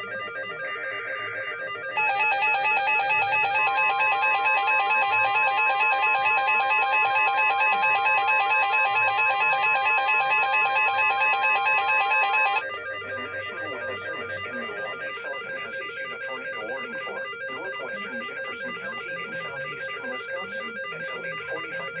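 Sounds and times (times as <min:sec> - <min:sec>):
electronic alert tone: 0:02.0 - 0:12.6.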